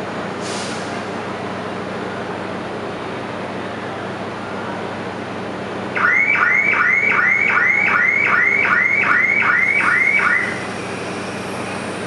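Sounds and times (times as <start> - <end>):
electronic alarm chirping: 6.0 - 10.6.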